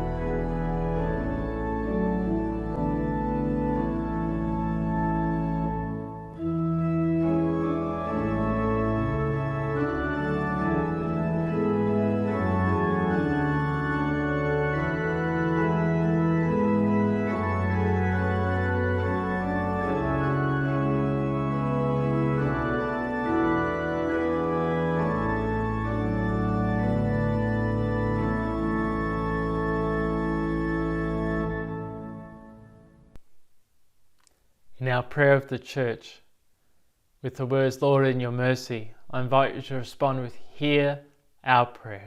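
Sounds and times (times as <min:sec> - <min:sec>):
organ playing a hymn: 0:00.0 - 0:33.2.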